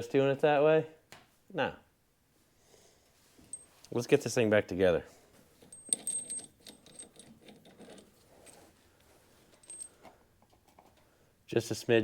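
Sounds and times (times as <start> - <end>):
small metal parts clinking: 3.5 - 3.8, 5.6 - 8.8, 9.5 - 10.1.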